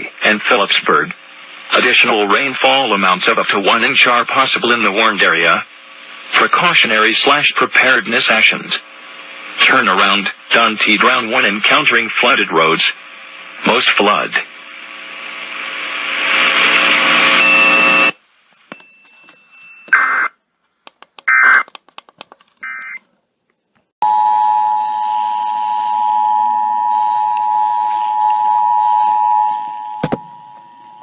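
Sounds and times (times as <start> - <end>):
loud radio static: 0.0 - 18.2, 19.9 - 20.3, 21.3 - 21.8
electronic data bursts: 19.9 - 20.3, 21.3 - 21.7.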